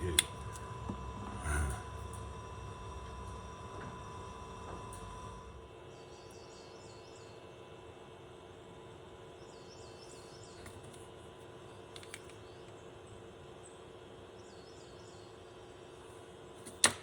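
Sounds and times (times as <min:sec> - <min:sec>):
low hum: 0:00.0 - 0:06.4.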